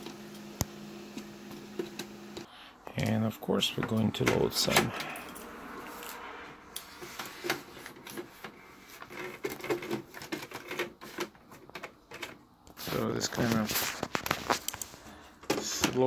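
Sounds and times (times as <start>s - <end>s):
paper rustling: 7.0s - 15.1s.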